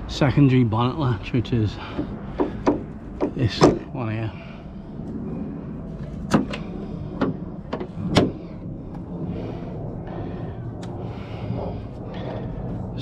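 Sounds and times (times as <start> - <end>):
steady low hum: 0.0 - 13.0
bonnet latch clicks and clunks: 2.0 - 3.8, 6.3 - 6.6, 7.2 - 8.4.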